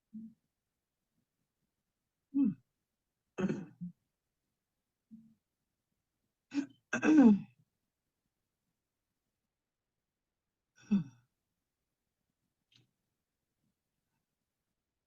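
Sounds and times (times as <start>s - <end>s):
person coughing: 3.4s - 3.9s, 6.6s - 7.4s.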